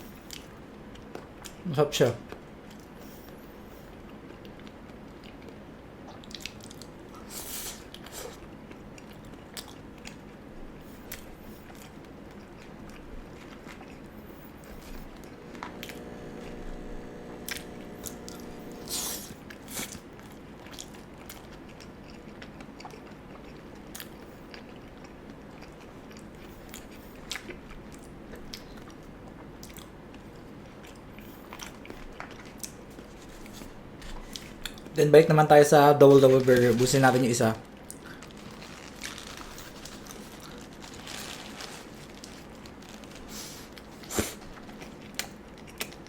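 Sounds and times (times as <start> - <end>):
steady low hum: 0.0 - 21.2
person chewing wetly: 2.3 - 16.1, 17.4 - 35.0, 37.6 - 46.0.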